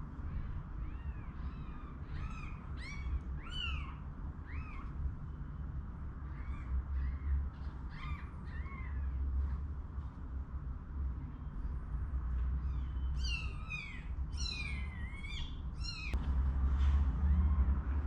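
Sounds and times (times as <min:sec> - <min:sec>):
low steady hum: 0:00.0 - 0:18.0
kittens mewing: 0:00.4 - 0:05.0.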